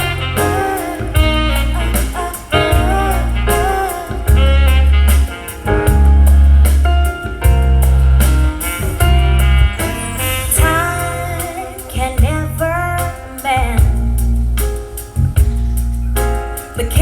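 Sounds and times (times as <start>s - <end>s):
song with singing voice: 0.0s - 5.7s, 9.7s - 14.1s
drum hits: 0.0s - 11.6s
strong bass notes: 0.0s - 17.0s.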